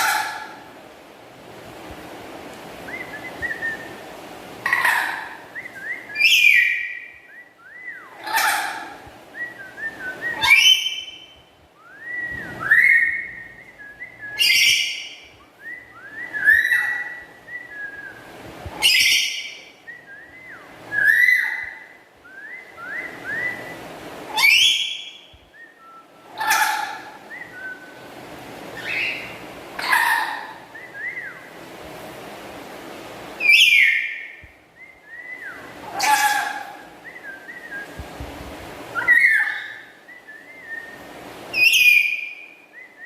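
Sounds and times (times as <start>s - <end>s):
parrot rising whistles: 11.8s - 15.0s, 15.6s - 18.2s
parrot harsh screeches: 36.0s - 36.7s.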